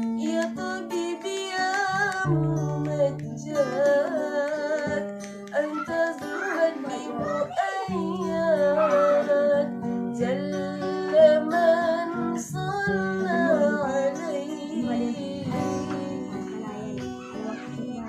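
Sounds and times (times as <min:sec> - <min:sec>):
acoustic guitar: 0:00.0 - 0:18.0
person singing devotional melody: 0:00.0 - 0:18.0.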